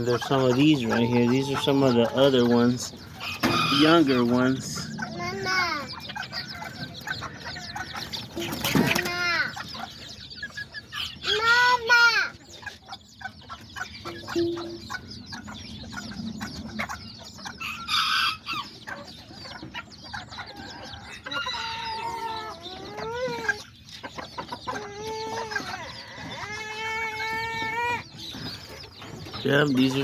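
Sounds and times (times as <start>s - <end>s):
roosters crowing: 0.0s - 8.9s, 15.5s - 19.2s, 20.2s - 23.6s, 24.8s - 28.7s
chickens clucking: 0.0s - 30.0s
chicks peeping: 0.0s - 30.0s.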